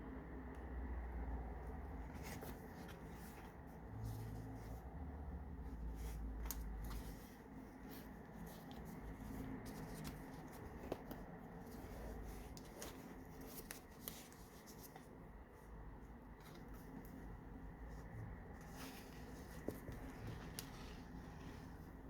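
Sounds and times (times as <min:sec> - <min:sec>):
paper pages rustling: 0:01.9 - 0:04.8, 0:05.6 - 0:22.0.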